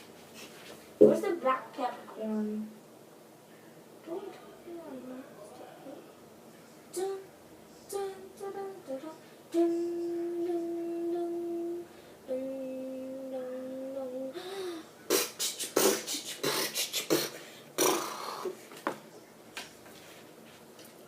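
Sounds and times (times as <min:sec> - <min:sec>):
person humming: 0:07.9 - 0:18.6
person sniffing: 0:14.5 - 0:18.6.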